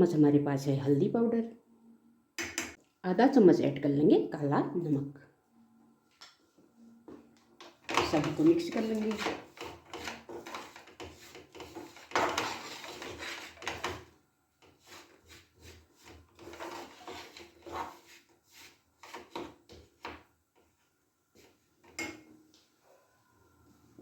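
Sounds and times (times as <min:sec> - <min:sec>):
spoon scraping in a pan: 0:07.6 - 0:20.2.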